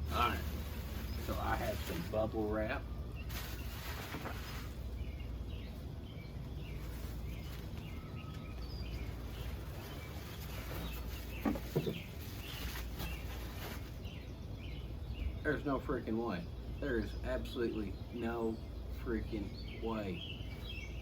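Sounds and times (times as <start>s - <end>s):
handling noises: 0.0s - 5.9s, 6.5s - 14.2s
birds chirping: 0.0s - 21.0s
outdoor background noise: 0.0s - 21.0s.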